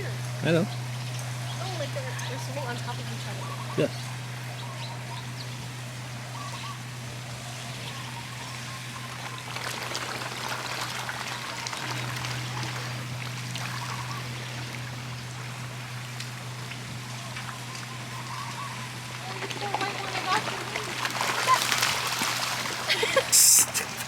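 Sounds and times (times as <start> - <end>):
steady low hum: 0.0 - 24.0
water splashing and trickling: 8.4 - 24.0
fish jostling at water surface: 19.4 - 24.0.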